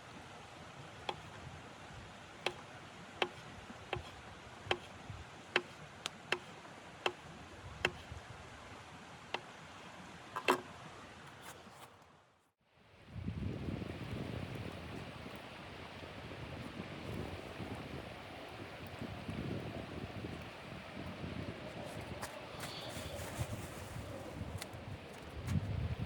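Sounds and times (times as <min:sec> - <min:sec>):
wood crackling in a stove: 0:13.2 - 0:26.0.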